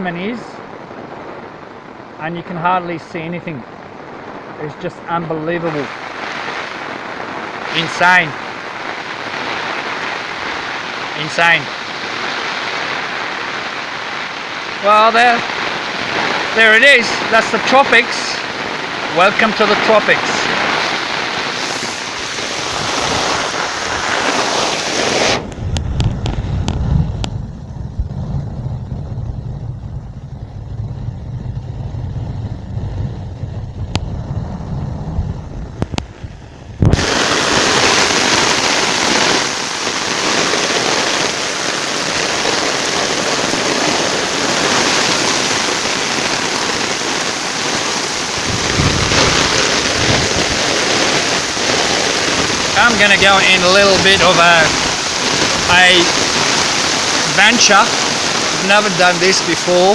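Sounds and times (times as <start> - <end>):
running floodwater: 0.0 - 26.4, 36.0 - 59.9
heavy rain pouring: 0.0 - 59.9
low rumble: 25.3 - 37.7, 48.4 - 50.8.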